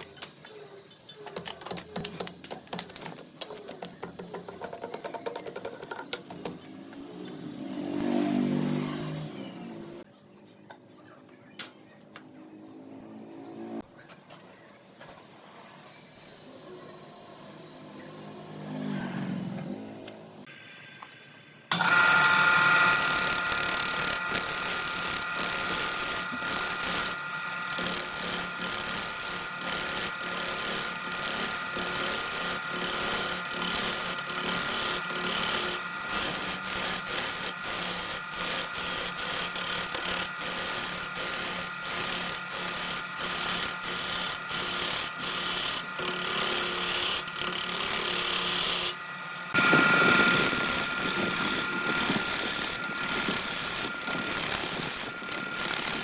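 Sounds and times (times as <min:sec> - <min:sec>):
turning tool scraping wood: 0:21.7 - 0:56.0
wood lathe motor whine: 0:21.7 - 0:56.0.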